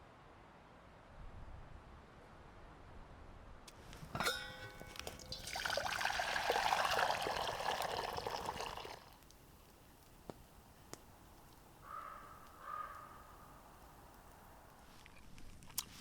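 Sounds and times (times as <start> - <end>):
liquid pouring: 4.2 - 10.1.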